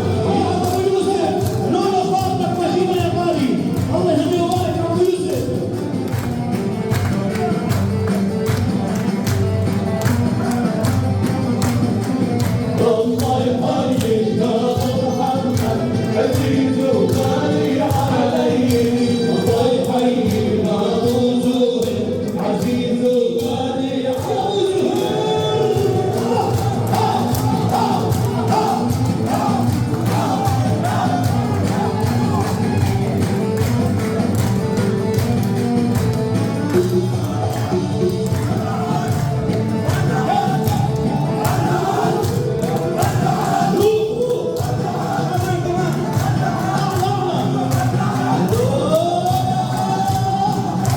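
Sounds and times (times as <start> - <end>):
group singing together: 0.0 - 1.6, 12.3 - 34.1, 36.8 - 50.9
drums and hand percussion: 0.0 - 50.9.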